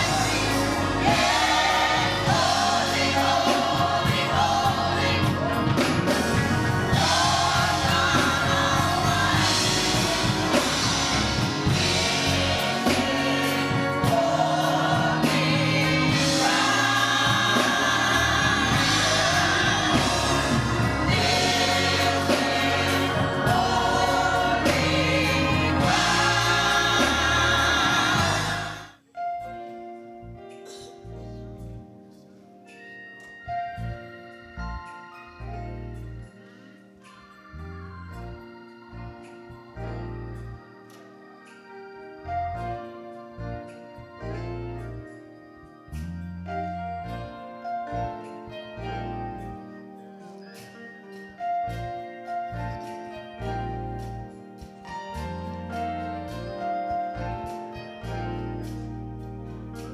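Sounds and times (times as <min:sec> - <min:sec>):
gospel choir singing: 0:00.0 - 0:29.0, 0:35.1 - 0:59.9
instrumental accompaniment: 0:00.0 - 0:37.0
held keyboard chords: 0:00.0 - 0:59.9.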